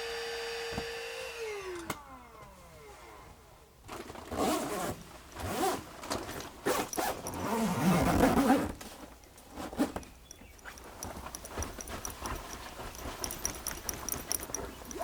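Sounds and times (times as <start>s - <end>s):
zipper rasping: 4.3s - 8.8s, 9.5s - 15.0s.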